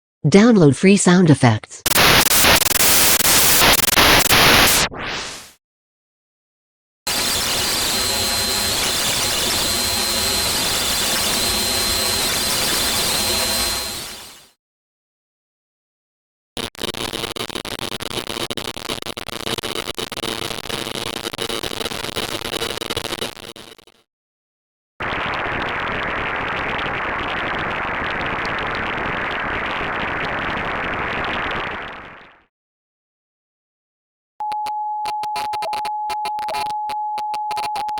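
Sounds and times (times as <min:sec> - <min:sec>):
pulsing buzzy tone: 0:01.8 - 0:04.9, 0:07.1 - 0:14.5
radio static hiss: 0:01.8 - 0:05.5, 0:07.1 - 0:14.2.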